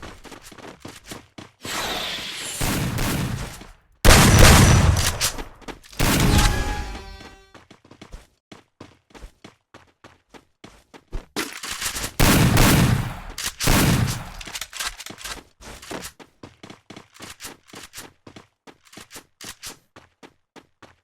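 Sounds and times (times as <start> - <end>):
video game gun blasts: 1.7 - 7.5, 12.2 - 14.6.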